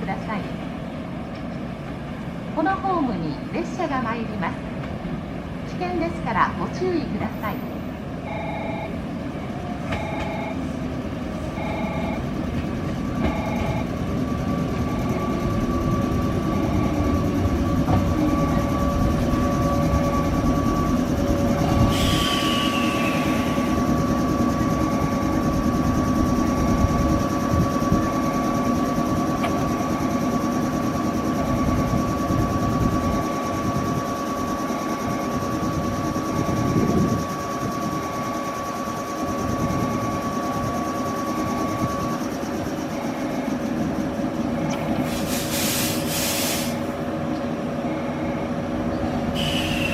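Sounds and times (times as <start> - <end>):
electric train slowing: 3.5 - 49.9
brakes hissing and squealing: 21.4 - 24.1, 44.6 - 47.0, 49.2 - 49.9.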